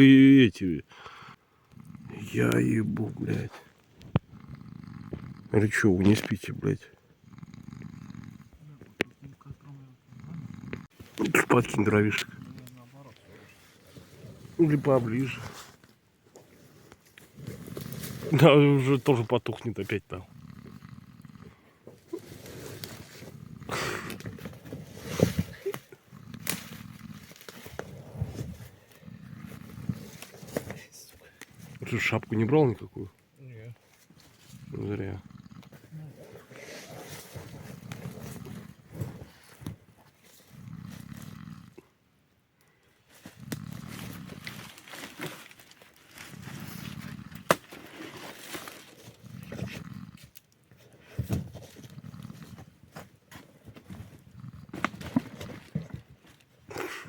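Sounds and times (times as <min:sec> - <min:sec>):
man snoring heavily: 0:04.3 - 0:05.6, 0:07.2 - 0:08.5, 0:23.4 - 0:24.4.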